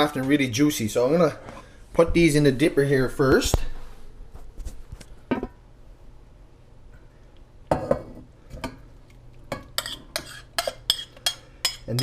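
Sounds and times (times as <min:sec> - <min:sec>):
dishes and saucepan clinking: 0:07.7 - 0:08.8, 0:09.5 - 0:12.0.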